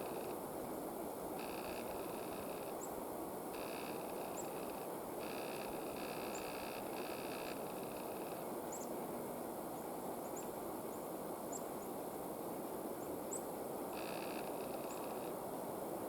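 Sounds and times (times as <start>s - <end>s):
faint high ticks: 3.6s - 8.4s, 14.0s - 15.3s.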